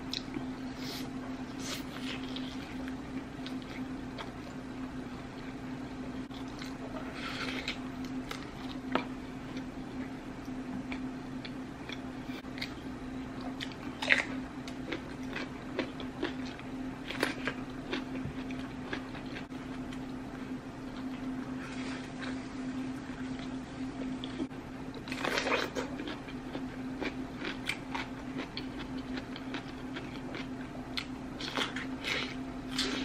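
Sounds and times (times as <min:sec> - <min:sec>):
low steady hum: 0:00.0 - 0:33.0
person chewing with wet mouth sounds: 0:06.3 - 0:09.7, 0:10.4 - 0:20.2, 0:20.9 - 0:33.0.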